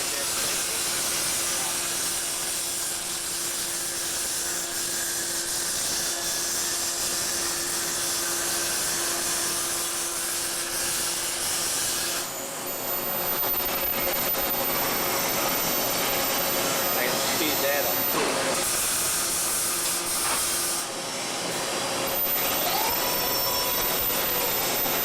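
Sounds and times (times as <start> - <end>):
arc welding crackling hiss: 0.0 - 25.0
thin high whine: 12.4 - 18.1, 22.2 - 25.0.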